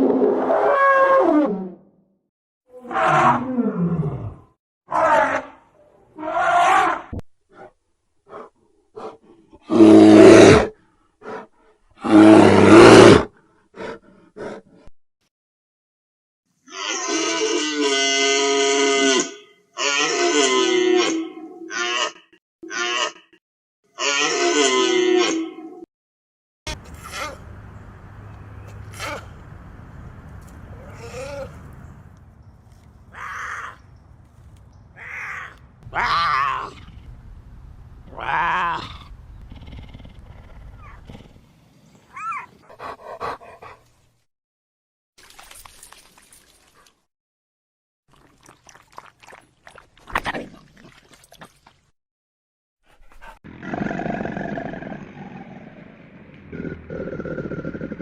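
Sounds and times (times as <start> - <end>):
animal rough calls: 26.7 - 29.6, 30.6 - 32.0, 52.9 - 58.0
animal harsh wavering calls: 35.0 - 37.1.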